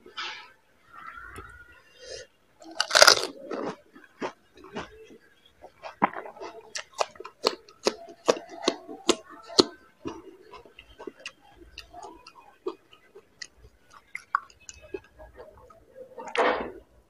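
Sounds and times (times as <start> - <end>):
crunching and chewing crisp shells: 2.6 - 15.9.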